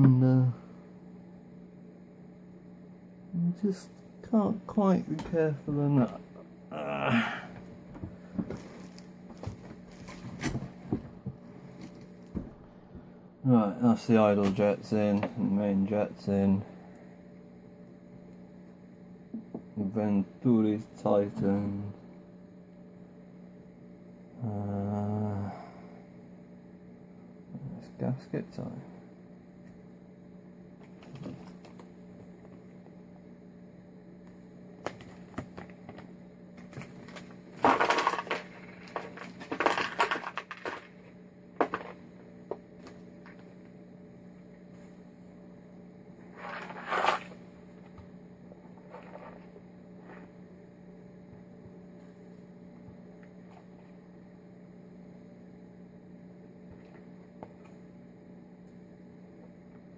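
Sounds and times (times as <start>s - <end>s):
steady low hum: 0.0s - 59.9s
rustling and clattering: 8.0s - 12.6s, 34.8s - 42.0s.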